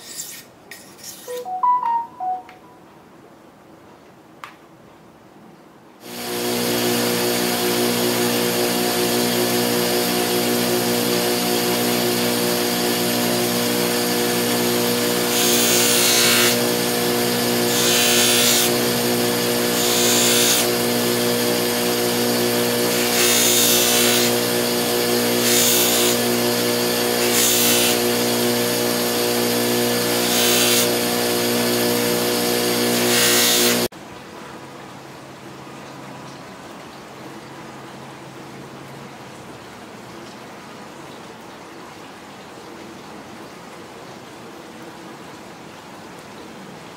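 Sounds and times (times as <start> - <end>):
knife blade grinding hiss: 0.0 - 1.5
grinding machine motor hum: 6.1 - 33.9.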